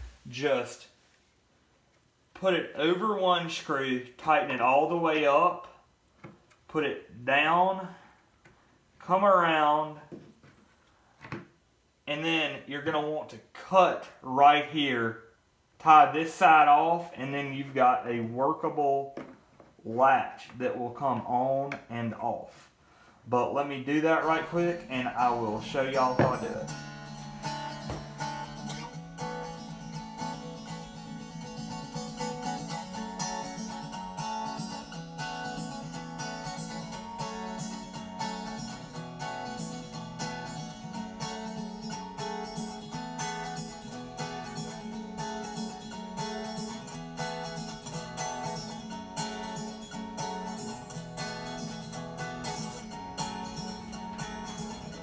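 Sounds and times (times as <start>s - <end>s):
acoustic guitar music: 0.0s - 0.5s, 23.7s - 55.0s.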